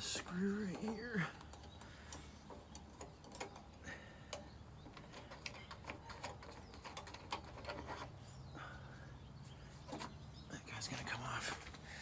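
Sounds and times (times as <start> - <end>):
small metallic clicks and taps: 0.6 - 8.0.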